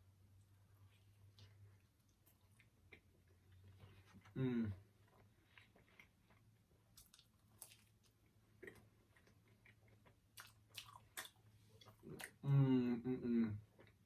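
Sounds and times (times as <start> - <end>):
chewing food: 0.8 - 12.4, 13.6 - 14.0
person humming: 12.4 - 13.6.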